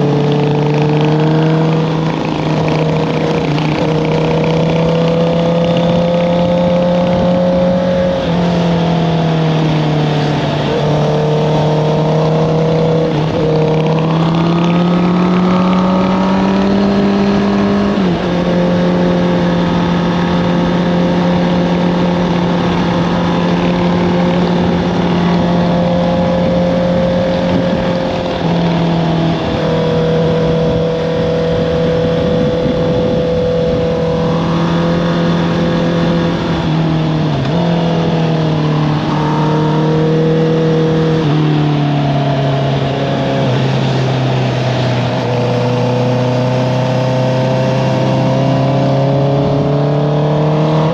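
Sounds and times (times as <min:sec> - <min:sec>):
motorcycle engine: 0:00.0 - 0:50.9.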